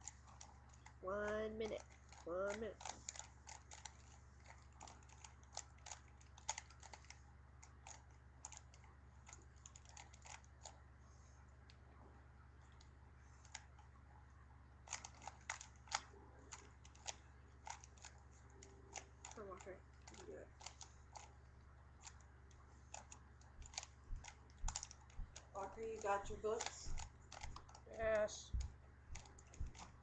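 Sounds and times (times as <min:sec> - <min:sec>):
low steady hum: 0:00.0 - 0:30.0
plastic puzzle cube clicking: 0:01.7 - 0:10.8, 0:14.9 - 0:21.4, 0:22.9 - 0:25.5.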